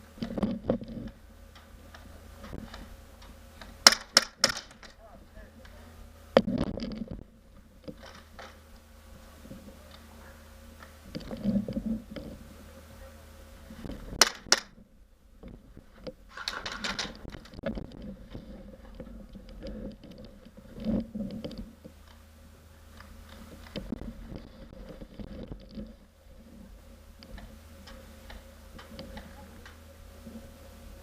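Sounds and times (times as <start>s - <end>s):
rustling of movement: 0.0s - 31.0s
airsoft pistol shots: 3.8s - 4.7s, 14.2s - 14.7s.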